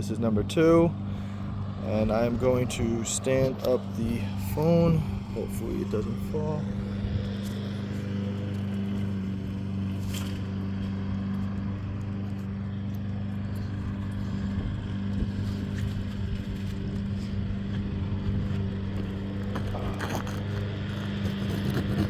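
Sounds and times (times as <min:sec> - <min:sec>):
low machine hum: 0:00.0 - 0:22.0.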